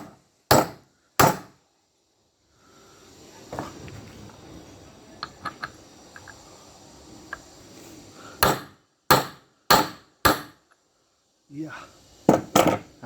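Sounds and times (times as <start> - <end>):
hammer striking metal: 0.0 - 1.5.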